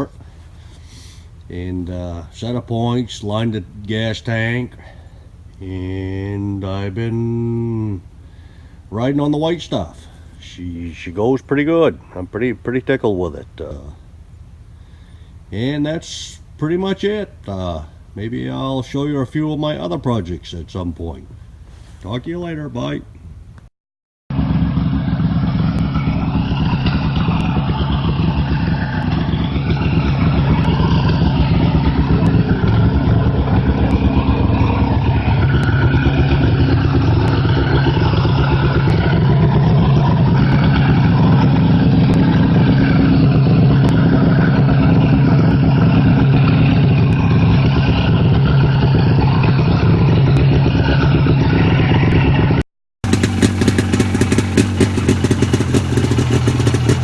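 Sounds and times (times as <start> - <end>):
snowmobile engine running: 0.0 - 14.0, 24.3 - 57.0
another engine running: 0.0 - 23.7, 24.3 - 57.0.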